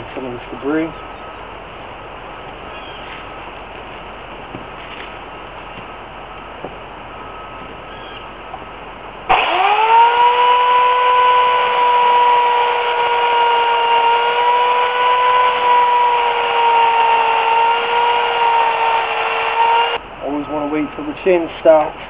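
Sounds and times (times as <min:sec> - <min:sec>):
electric chainsaw whining: 0:09.3 - 0:20.0.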